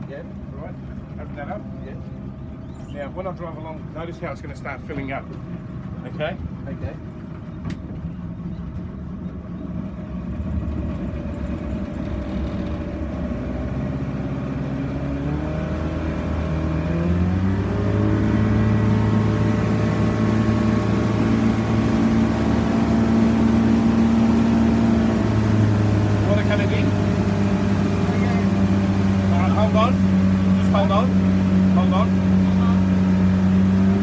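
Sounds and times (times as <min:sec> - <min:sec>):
boat motor speeding up: 0:09.4 - 0:34.0.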